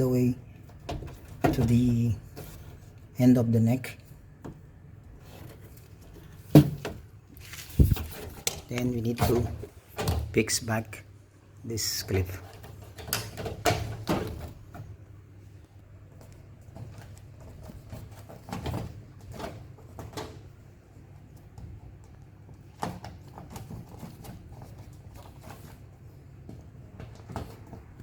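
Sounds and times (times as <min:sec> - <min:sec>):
hands handling hose: 0:04.3 - 0:10.2.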